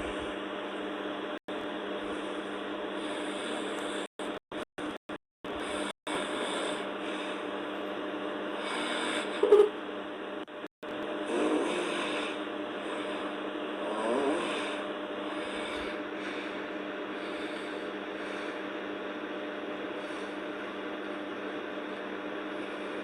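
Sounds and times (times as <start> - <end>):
faint hum: 0.0 - 23.0
girl snoring: 11.2 - 16.0.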